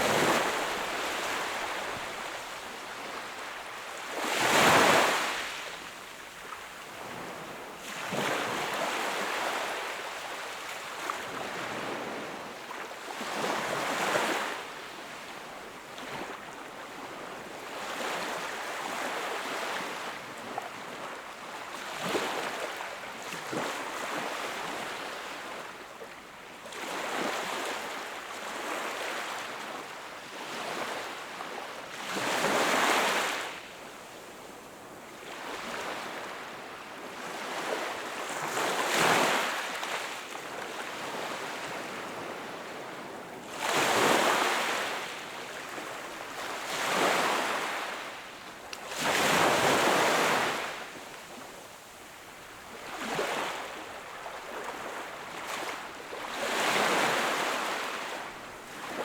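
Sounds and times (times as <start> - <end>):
small waves breaking on shore: 34.8 - 59.0.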